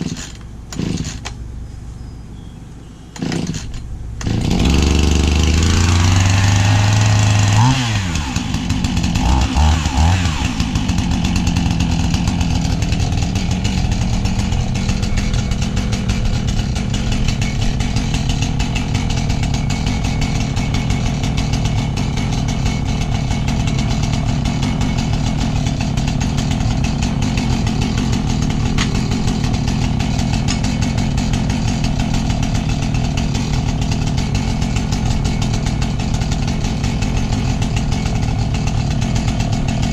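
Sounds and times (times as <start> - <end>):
chainsaw cutting log: 0.0 - 1.4, 3.1 - 39.9.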